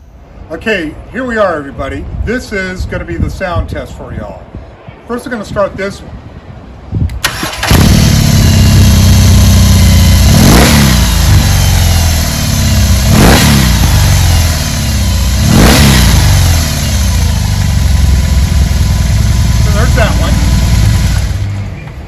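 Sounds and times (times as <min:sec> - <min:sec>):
motorcycle engine cranking: 0:07.2 - 0:21.7
engine revving blips: 0:07.4 - 0:22.0
motorcycle engine idling: 0:07.6 - 0:22.0.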